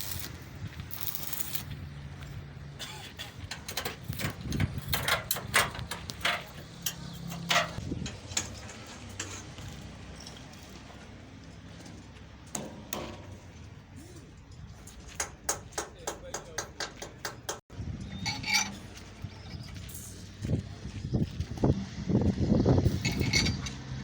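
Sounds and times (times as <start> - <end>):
metal clanks and knocks: 2.8 - 19.4, 22.8 - 24.0.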